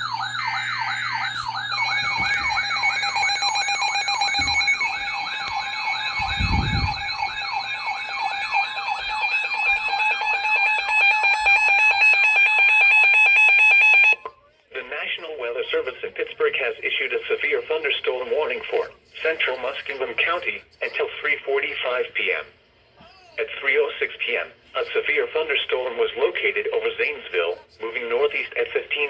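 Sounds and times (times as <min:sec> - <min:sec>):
steady alert tones: 0:00.0 - 0:12.7
warbling alert siren: 0:00.0 - 0:14.2.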